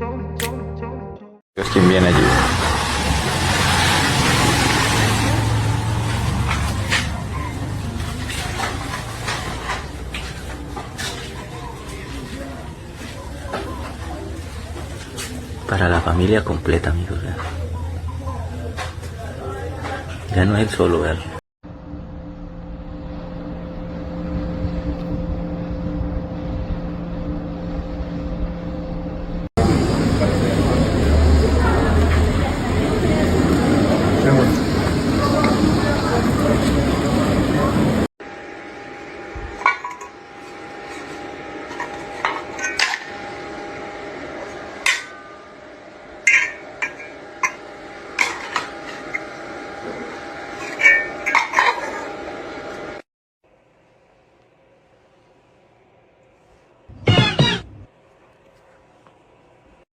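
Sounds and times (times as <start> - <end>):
engine-like drone: 1.6 - 53.0
dishes and cutlery clinking: 41.7 - 43.1, 46.3 - 47.6, 50.6 - 52.1.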